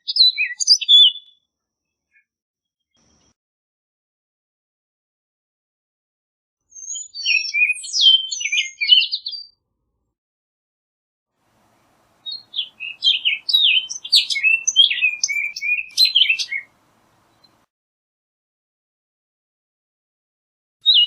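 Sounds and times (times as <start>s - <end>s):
bird singing whistled notes: 0.0s - 1.4s, 6.7s - 9.6s, 11.6s - 17.6s.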